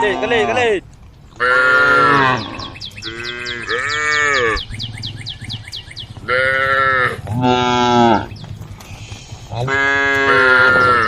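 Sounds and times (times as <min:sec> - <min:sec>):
cows mooing: 0:01.4 - 0:05.2, 0:06.2 - 0:08.3, 0:09.5 - 0:11.0.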